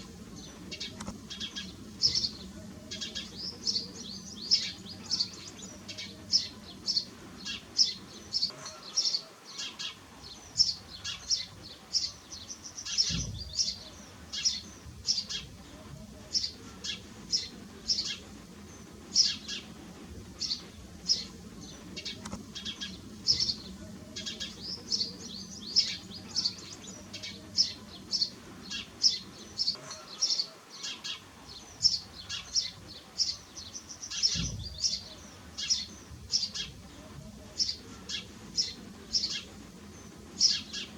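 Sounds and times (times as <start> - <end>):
sparrows chirping: 0.0 - 40.9
low thumps: 13.1 - 13.6, 34.3 - 34.9.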